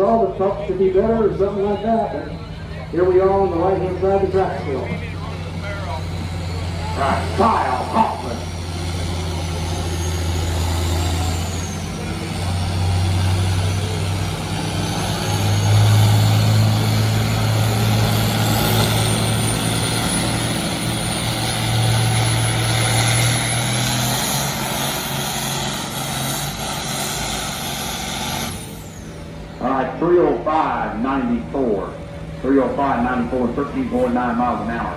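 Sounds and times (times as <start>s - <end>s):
tractor engine working hard: 0.0s - 34.9s.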